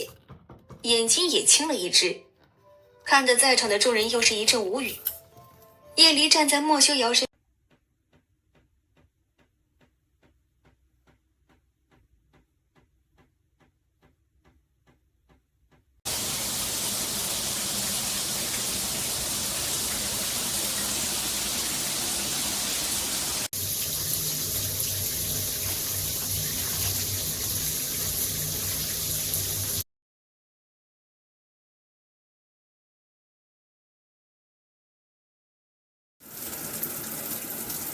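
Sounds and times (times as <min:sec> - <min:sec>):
shower spraying water: 0:16.1 - 0:29.8, 0:36.2 - 0:37.9.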